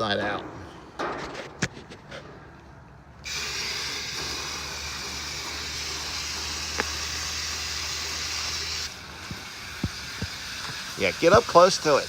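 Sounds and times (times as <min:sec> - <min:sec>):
hose water spraying on coil: 0:03.2 - 0:12.0.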